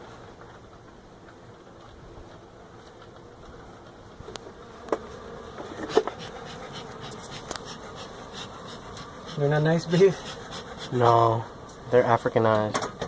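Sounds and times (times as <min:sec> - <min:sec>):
bees buzzing: 0:00.6 - 0:13.0.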